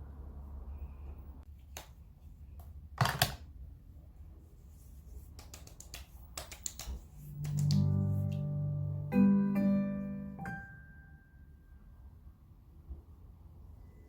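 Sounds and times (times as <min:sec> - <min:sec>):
low steady hum: 0:00.0 - 0:14.0
sharp clicks and taps: 0:05.4 - 0:07.9.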